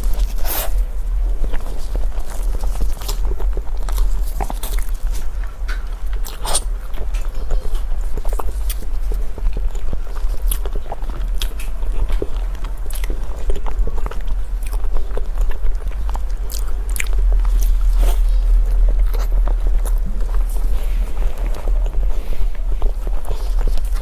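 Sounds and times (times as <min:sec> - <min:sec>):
chewing crunchy food: 0:00.0 - 0:24.0
steady low hum: 0:00.0 - 0:24.0.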